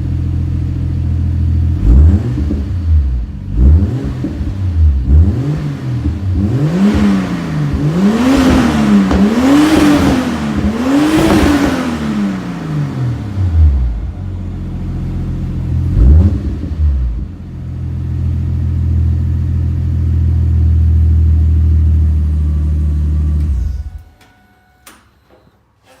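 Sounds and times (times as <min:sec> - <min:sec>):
car engine idling: 0:00.0 - 0:24.1
engine rev blip: 0:01.8 - 0:14.1, 0:21.9 - 0:25.6.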